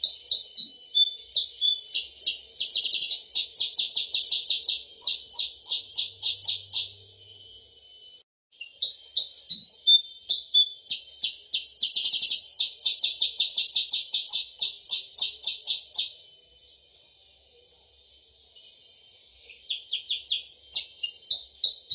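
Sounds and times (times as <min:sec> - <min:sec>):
high bird chirps: 0:00.0 - 0:07.0, 0:08.6 - 0:16.2, 0:19.4 - 0:21.9.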